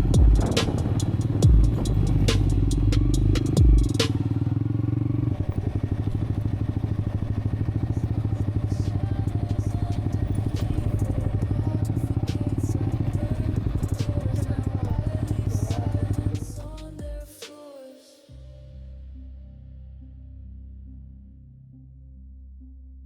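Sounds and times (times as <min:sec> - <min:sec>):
engine running pulsing: 0:00.0 - 0:17.2
sharp clicks: 0:00.4 - 0:04.2.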